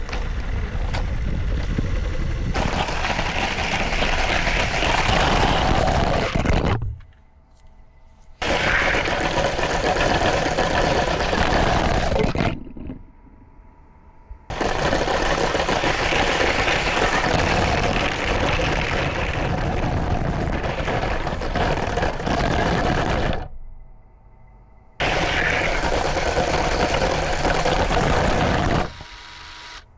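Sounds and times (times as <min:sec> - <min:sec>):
toy train rumbling on plastic track: 0:00.0 - 0:05.8, 0:14.5 - 0:22.2, 0:25.0 - 0:29.0.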